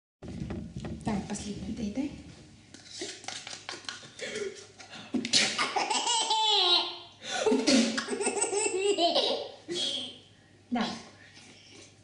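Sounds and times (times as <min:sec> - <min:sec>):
baby laughing: 0:05.5 - 0:07.0, 0:07.6 - 0:10.2.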